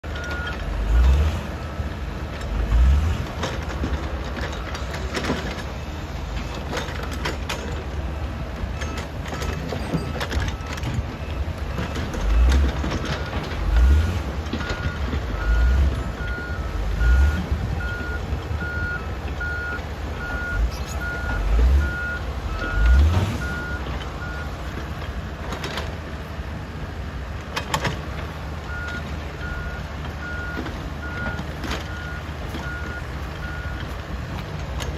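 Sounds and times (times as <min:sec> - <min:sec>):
diesel engines rumbling: 0:00.0 - 0:34.9
knocks and clanks: 0:03.2 - 0:16.6, 0:23.6 - 0:26.2, 0:27.4 - 0:34.9
reversing alarm beeping: 0:08.7 - 0:24.6, 0:28.7 - 0:33.9.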